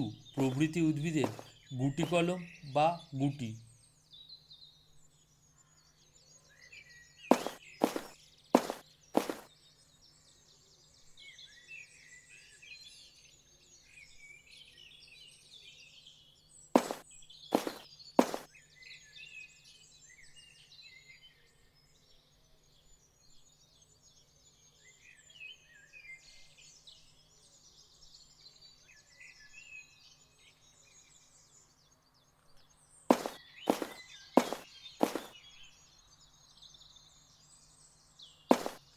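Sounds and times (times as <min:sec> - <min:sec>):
small birds chirping: 0:00.0 - 0:38.9
sharp knocks: 0:07.3 - 0:09.4, 0:16.8 - 0:18.5, 0:33.1 - 0:35.3, 0:38.5 - 0:38.8.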